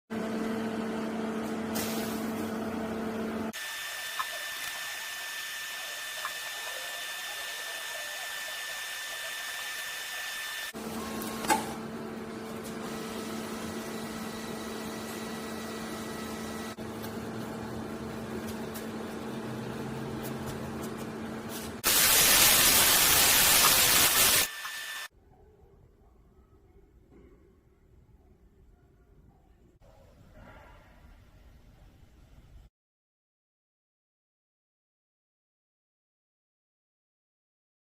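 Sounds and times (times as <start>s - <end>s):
electrical hum: 2.2s - 25.1s
welding hiss: 21.6s - 25.1s.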